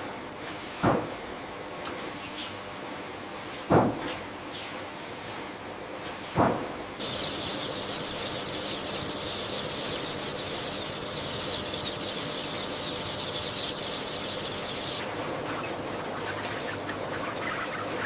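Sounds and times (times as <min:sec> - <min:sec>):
chickens cheeping: 0:07.0 - 0:18.0.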